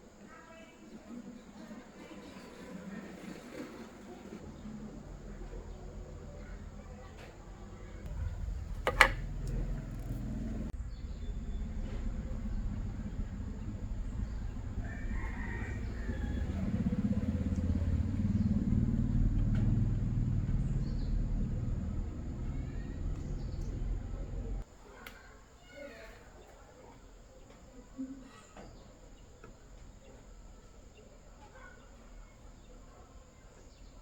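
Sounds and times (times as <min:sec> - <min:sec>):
sharp click: 0:08.1 - 0:10.4
low rumble: 0:08.1 - 0:24.6
rooster crowing: 0:14.5 - 0:17.8.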